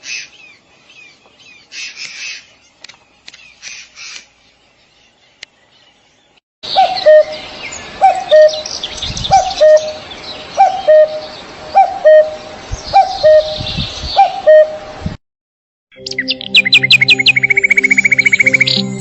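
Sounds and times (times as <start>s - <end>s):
small birds chirping: 0.0s - 14.7s, 16.0s - 19.0s
cuckoo calling: 6.7s - 14.9s, 16.0s - 19.0s.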